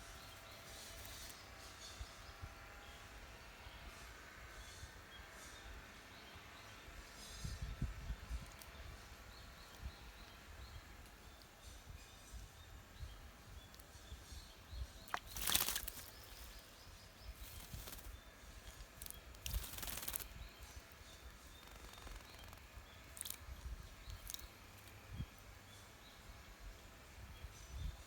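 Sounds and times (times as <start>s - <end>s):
faint songbird calls: 0.0s - 28.0s
bird splashing in water: 15.0s - 16.6s, 19.0s - 20.4s.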